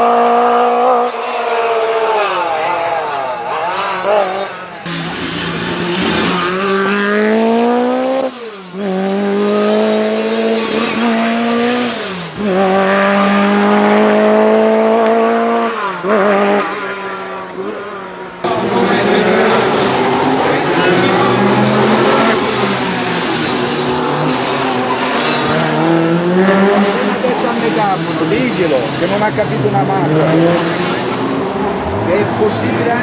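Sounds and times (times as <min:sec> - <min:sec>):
car engine accelerating hard: 0:00.0 - 0:33.0
engine revving blips: 0:00.0 - 0:33.0.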